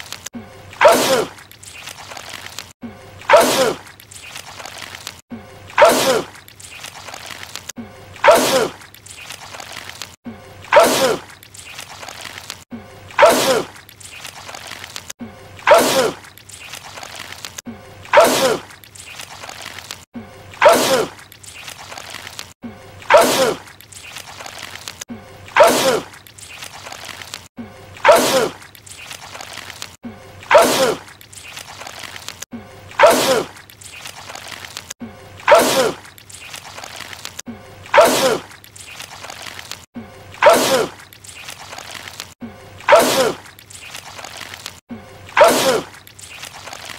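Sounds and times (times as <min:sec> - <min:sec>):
man sneezing: 0:45.4 - 0:45.9.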